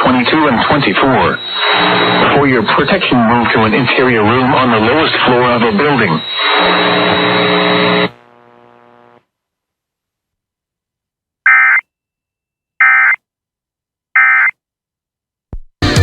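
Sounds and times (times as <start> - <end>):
digital data tone bursts: 0.2 - 8.0.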